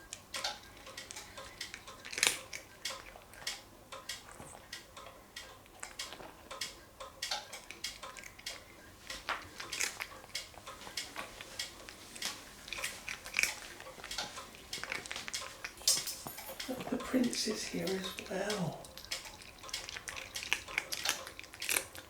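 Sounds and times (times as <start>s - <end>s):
cat crunching dry treats: 0.6s - 3.6s, 4.2s - 4.8s, 5.6s - 6.5s, 9.0s - 22.0s.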